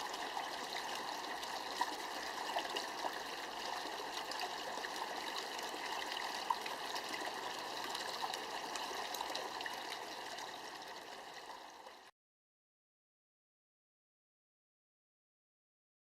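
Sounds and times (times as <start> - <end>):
water drips and splashes: 0.0 - 12.1
water trickling over rocks: 0.0 - 12.1.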